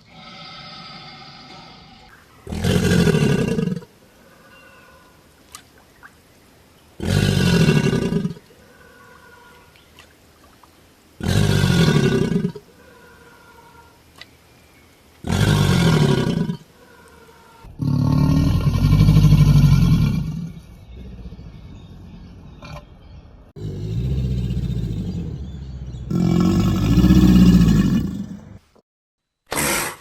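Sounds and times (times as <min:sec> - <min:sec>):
alligator bellowing: 0:00.1 - 0:05.0, 0:11.2 - 0:12.7, 0:15.2 - 0:16.7, 0:17.7 - 0:21.5, 0:23.6 - 0:28.6.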